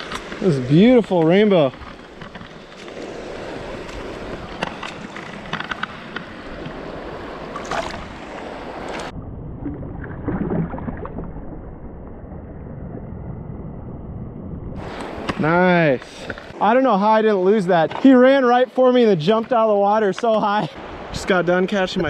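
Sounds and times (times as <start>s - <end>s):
small splashes: 7.5s - 11.4s.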